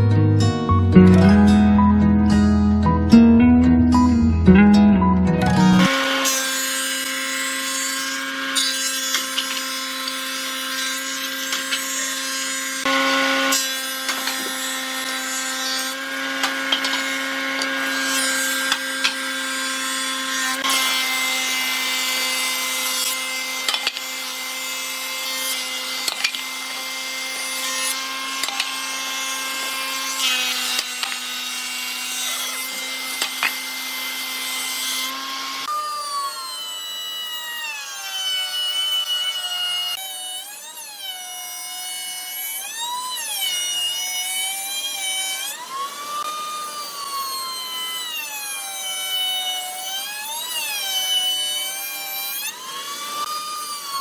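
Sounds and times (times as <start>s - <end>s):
power tool humming: 1.0s - 54.0s.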